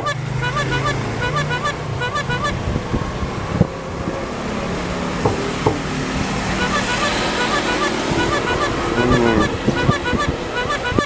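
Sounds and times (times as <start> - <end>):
high chirping: 0.0 - 3.2, 6.4 - 11.0
motorcycle engines running: 0.0 - 11.0.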